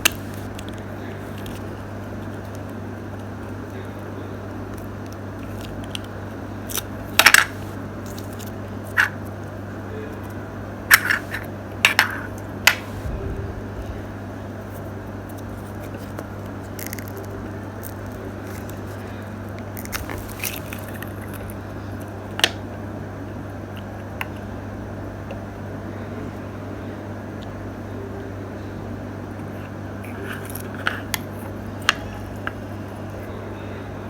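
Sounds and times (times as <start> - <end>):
handling clicks and rustles: 0.0 - 9.5, 10.1 - 14.1, 14.7 - 22.7
steady low hum: 0.0 - 34.0.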